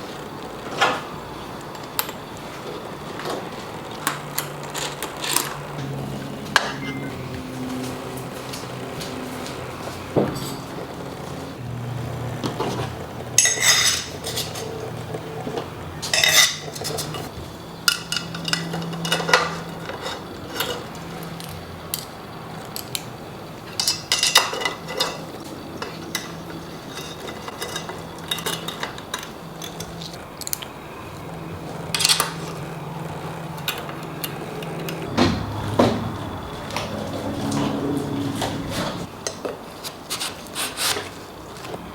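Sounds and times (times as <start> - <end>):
metal tools clinking: 13.4 - 14.9, 16.0 - 22.1, 23.7 - 30.6, 31.9 - 32.6
sharp knocks: 35.1 - 36.3.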